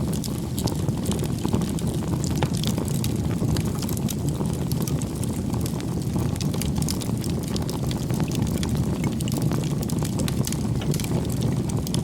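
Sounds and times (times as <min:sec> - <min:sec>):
bonfire crackling and popping: 0:00.0 - 0:12.0
low rumble of flames: 0:00.0 - 0:12.0.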